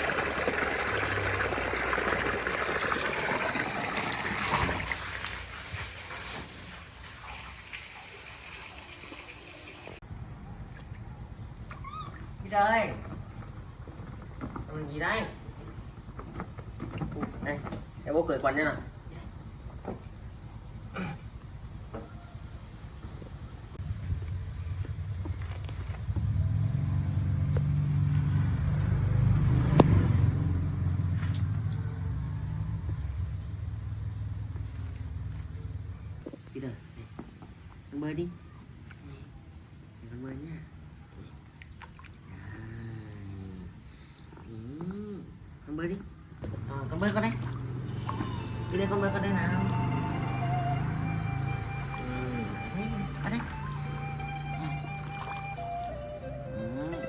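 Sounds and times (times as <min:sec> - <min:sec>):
water pouring into a pool: 0:00.0 - 0:10.0, 0:47.0 - 0:50.5, 0:52.4 - 0:56.0
small engine running: 0:47.4 - 0:57.0.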